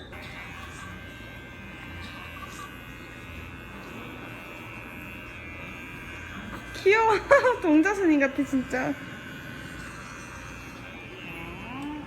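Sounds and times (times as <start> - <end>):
electric hair clipper buzzing: 0.0 - 12.0.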